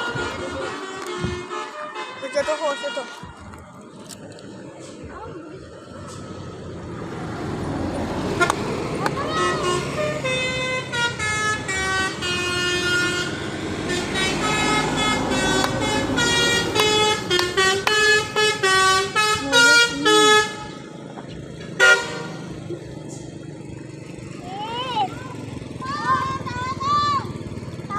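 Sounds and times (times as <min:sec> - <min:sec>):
musical air horn tune: 0:00.0 - 0:03.3, 0:09.3 - 0:20.8, 0:21.8 - 0:22.4.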